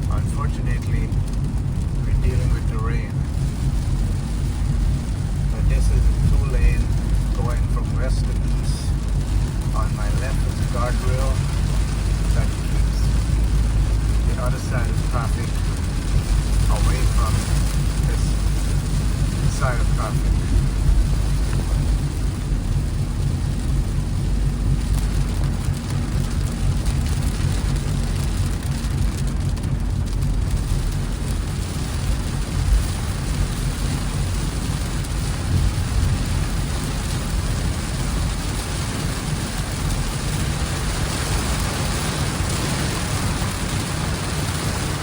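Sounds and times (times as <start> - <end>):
rain on a vehicle: 0.0 - 45.0
vehicle driving rumble: 0.0 - 45.0.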